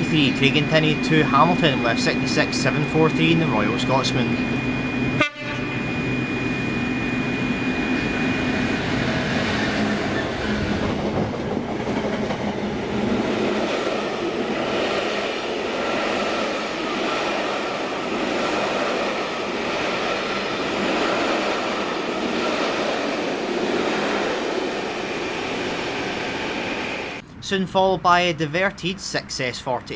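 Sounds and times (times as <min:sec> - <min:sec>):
train wheels on rails: 0:00.0 - 0:05.2, 0:05.8 - 0:27.2
diesel locomotive engine drone: 0:00.0 - 0:27.5.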